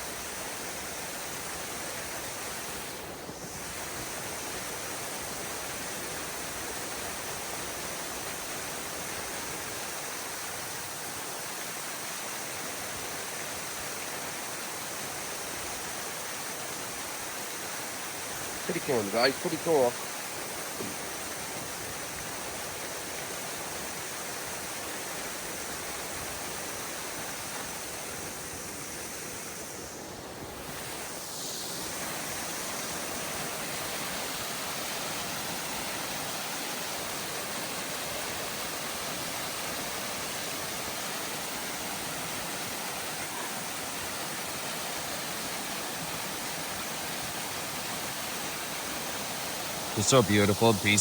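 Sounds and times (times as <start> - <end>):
waterfall rushing: 17.9 - 21.5, 49.5 - 51.0.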